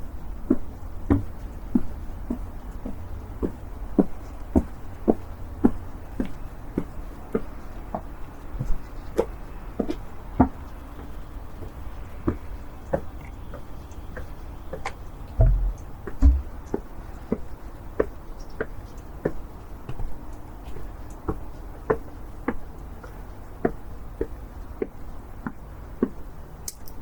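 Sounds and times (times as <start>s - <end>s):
footsteps walking: 14.2s - 16.8s
dull low thumps: 15.3s - 16.8s.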